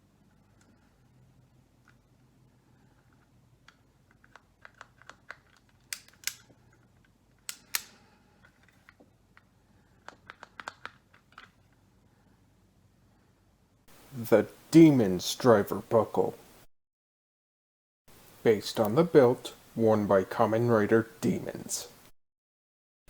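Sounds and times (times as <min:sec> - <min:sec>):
plastic toy clicks and snaps: 0:03.7 - 0:06.5, 0:07.4 - 0:08.0.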